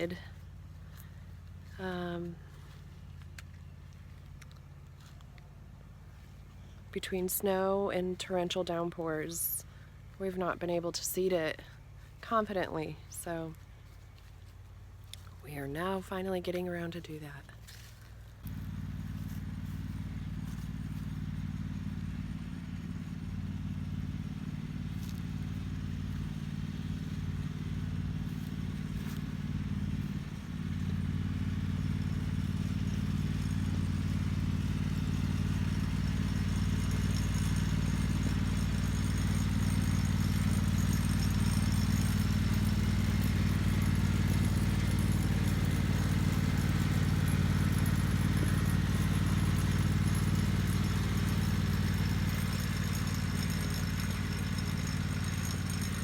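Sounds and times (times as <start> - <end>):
vehicle engine running: 0.0 - 56.0.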